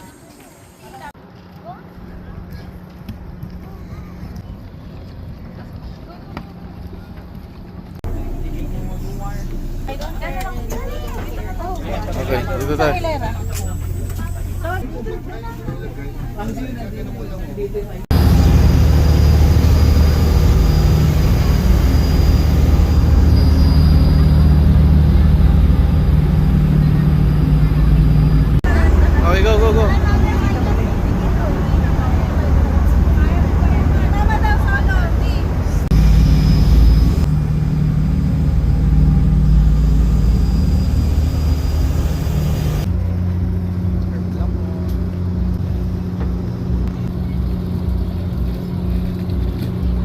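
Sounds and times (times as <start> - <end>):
ferry engine drone: 0.0 - 50.0
faint high whine: 18.1 - 29.0, 35.9 - 43.7.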